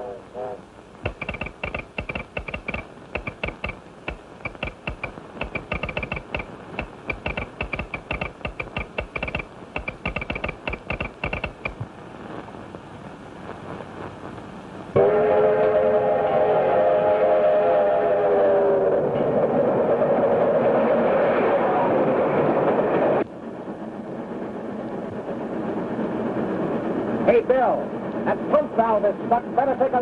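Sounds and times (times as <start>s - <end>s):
rapid metallic clicking: 1.0s - 11.8s
steam locomotive whistle: 15.0s - 20.0s.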